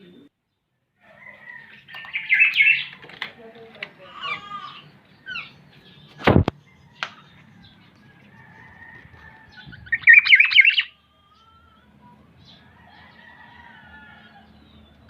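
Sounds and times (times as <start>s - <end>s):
bird calling and warbling: 1.6s - 3.1s, 4.0s - 8.0s, 9.4s - 12.7s
sharp knock: 6.2s - 6.5s.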